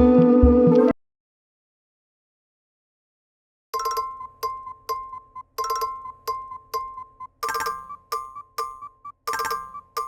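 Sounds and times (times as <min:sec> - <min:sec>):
phone ringtone chiming: 0:03.8 - 0:10.0.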